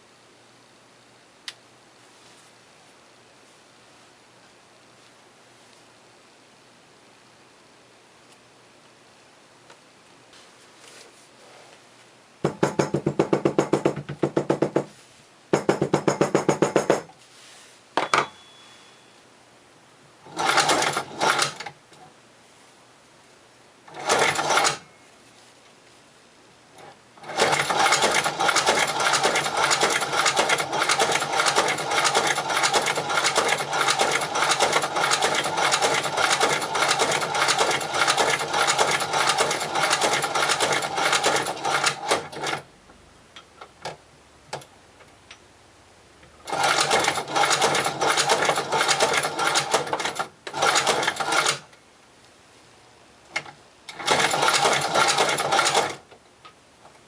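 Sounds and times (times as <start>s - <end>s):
sewing machine clicks: 20.3s - 21.8s, 23.9s - 24.8s, 26.8s - 42.6s, 46.4s - 51.7s, 53.3s - 56.0s
sewing machine stitching leather: 20.3s - 21.8s, 23.9s - 24.9s, 26.8s - 42.6s, 46.4s - 51.7s, 53.3s - 56.0s.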